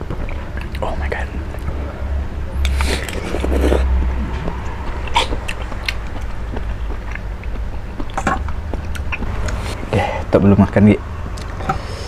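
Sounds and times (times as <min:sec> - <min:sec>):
steady low hum: 0:00.0 - 0:12.0
wet mouth clicks and chewing: 0:02.6 - 0:09.8, 0:11.2 - 0:11.7.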